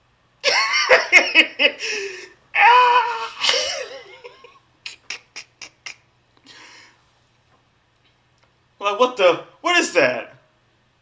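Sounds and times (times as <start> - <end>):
person laughing: 0.4 - 6.1
person crying out: 0.5 - 6.0.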